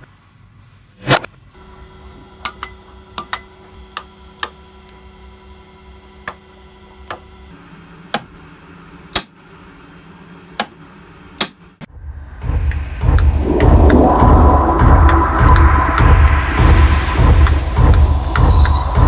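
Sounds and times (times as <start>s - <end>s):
steady low hum: 11.8s - 19.0s.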